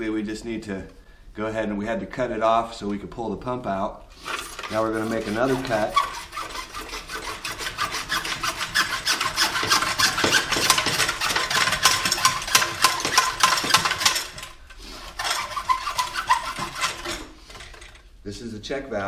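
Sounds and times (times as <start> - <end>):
saw cutting pipe: 4.2 - 18.0.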